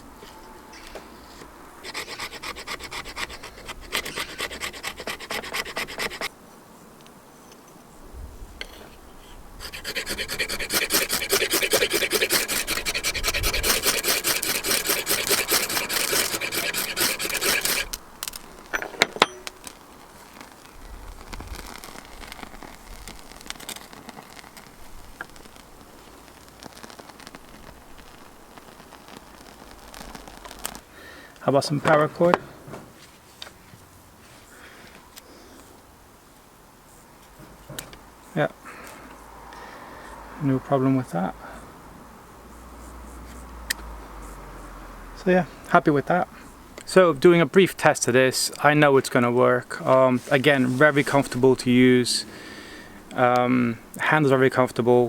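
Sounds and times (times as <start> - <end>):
knife scraping wood: 1.8 - 6.3, 9.6 - 18.8.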